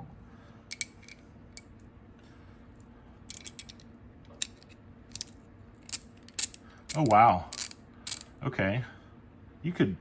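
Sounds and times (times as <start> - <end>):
light metallic clicks of ratchet parts: 3.3 - 8.3.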